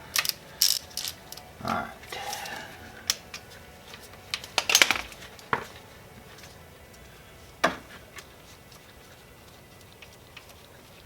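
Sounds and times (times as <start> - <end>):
hand tools clinking on metal: 0.1 - 1.5.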